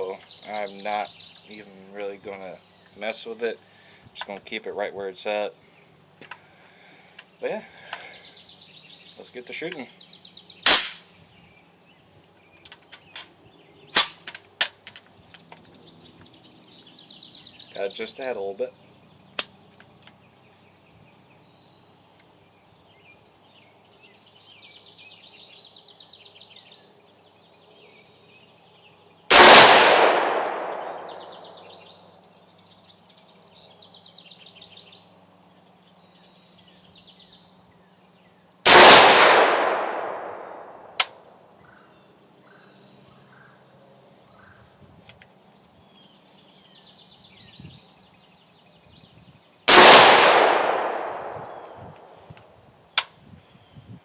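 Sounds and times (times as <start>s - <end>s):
birds chirping: 0.0s - 54.0s
rifle shots with echo: 10.7s - 11.0s, 14.0s - 14.2s, 29.3s - 31.7s, 38.7s - 41.1s, 49.7s - 51.8s.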